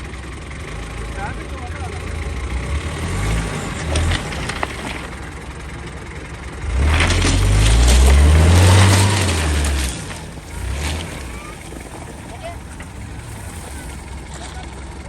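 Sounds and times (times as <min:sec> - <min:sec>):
engine revving hard: 0:01.8 - 0:05.2, 0:06.6 - 0:14.5.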